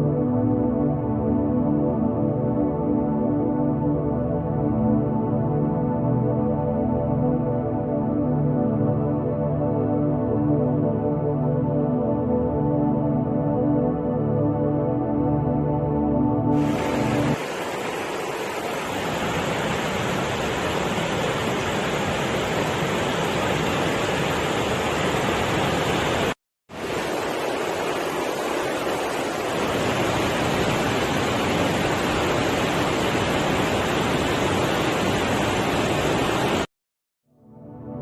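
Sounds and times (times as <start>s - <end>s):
water rushing: 16.5s - 36.7s.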